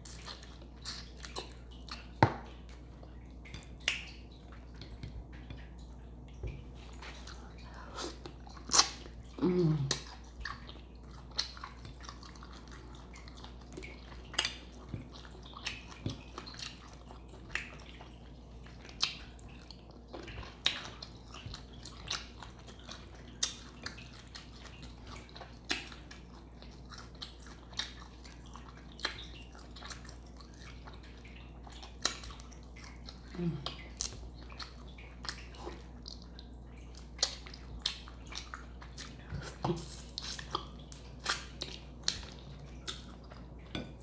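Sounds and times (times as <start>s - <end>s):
wet chewing: 0.0s - 44.0s
lip smacks: 8.0s - 9.1s, 37.0s - 43.4s.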